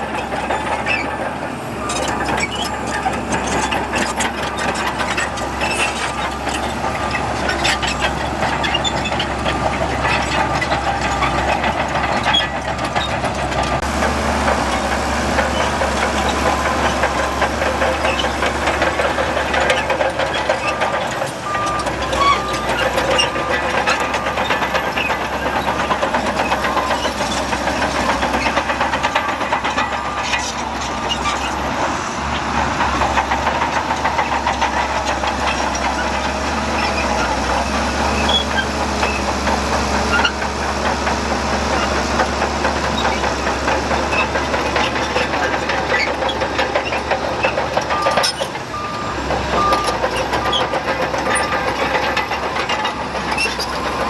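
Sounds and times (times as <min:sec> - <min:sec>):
heavy diesel machinery running: 0:00.0 - 0:54.0
reversing alarm beeping: 0:47.9 - 0:54.0.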